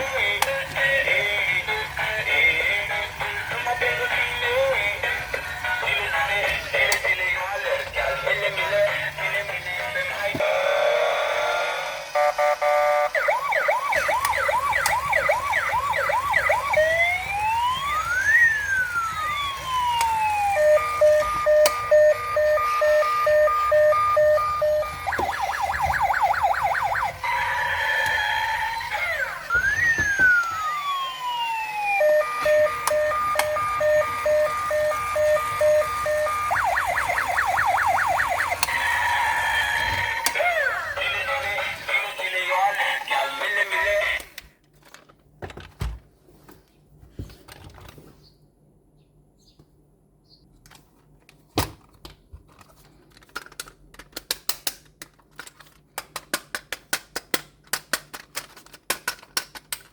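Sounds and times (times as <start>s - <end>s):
toy police siren: 10.4s - 41.8s.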